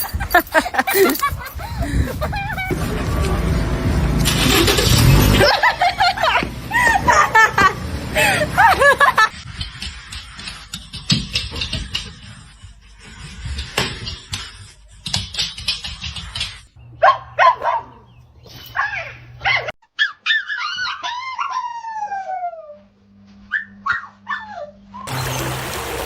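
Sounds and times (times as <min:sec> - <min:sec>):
dog whining and howling: 0:18.8 - 0:22.9, 0:23.5 - 0:25.1.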